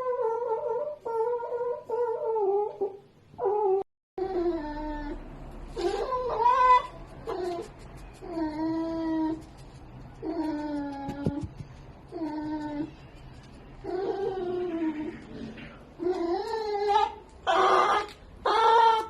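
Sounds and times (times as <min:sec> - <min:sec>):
fox whining cries: 0:05.8 - 0:09.4, 0:16.0 - 0:19.0.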